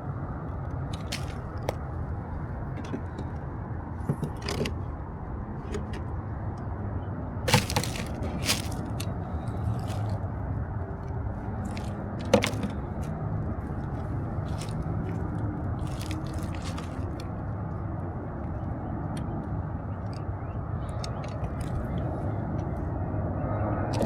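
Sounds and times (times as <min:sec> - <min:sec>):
debris crunching and crackling: 0:00.9 - 0:01.9, 0:07.5 - 0:10.4, 0:11.4 - 0:17.8.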